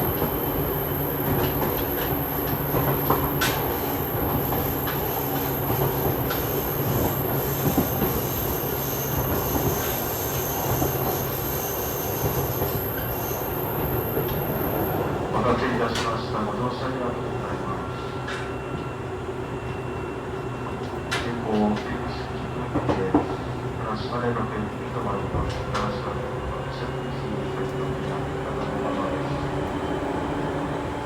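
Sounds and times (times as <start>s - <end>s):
train wheels and motors rumbling: 0.0s - 17.4s.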